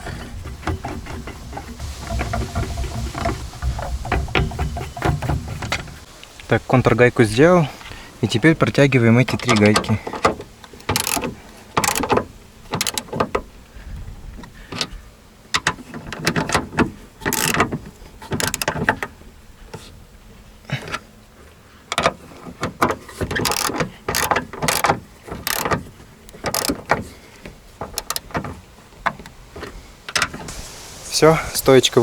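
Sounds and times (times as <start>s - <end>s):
ratchet wrench clicking: 10.8s - 12.1s, 17.3s - 17.6s, 23.4s - 26.8s.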